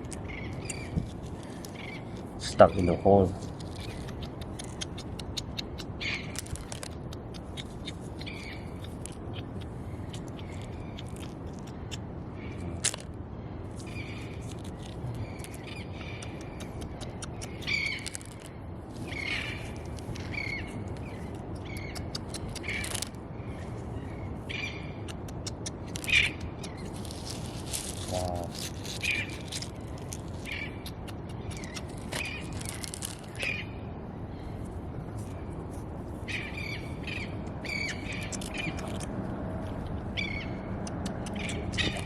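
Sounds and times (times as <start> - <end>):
birds squawking and chirping: 0.0 - 5.0, 7.5 - 12.8, 13.8 - 25.2, 25.8 - 34.6, 36.2 - 39.1, 40.1 - 42.0
sharp clicks: 3.5 - 12.0, 15.4 - 18.5, 21.3 - 23.1, 40.6 - 42.0.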